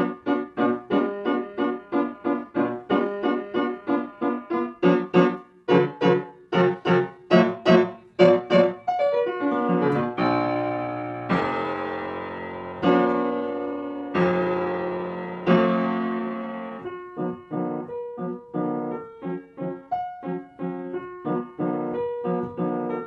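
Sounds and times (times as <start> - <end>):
bouncy piano music: 0.0 - 23.0.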